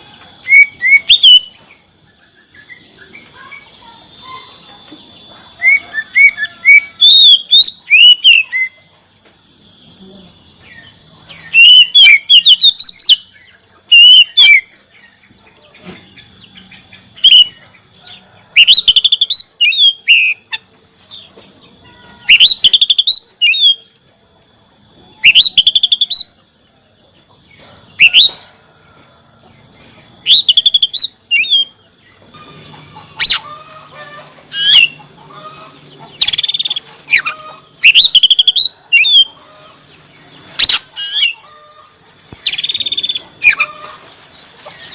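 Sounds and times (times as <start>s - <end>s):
bird rasping calls: 0.0s - 4.6s, 5.4s - 8.8s, 10.8s - 15.3s, 16.4s - 21.2s, 21.8s - 23.9s, 25.1s - 26.4s, 27.9s - 28.5s, 30.1s - 44.1s
bird whistled song: 0.0s - 8.9s, 10.3s - 14.8s, 16.2s - 17.7s, 18.6s - 20.6s, 22.2s - 24.0s, 25.1s - 26.4s, 28.0s - 28.5s, 30.2s - 32.0s, 34.5s - 35.0s, 36.1s - 39.4s, 40.4s - 41.4s, 42.4s - 43.8s.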